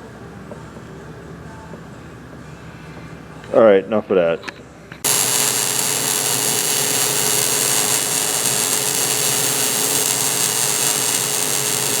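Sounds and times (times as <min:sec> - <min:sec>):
power tool running with hiss: 0:05.0 - 0:12.0.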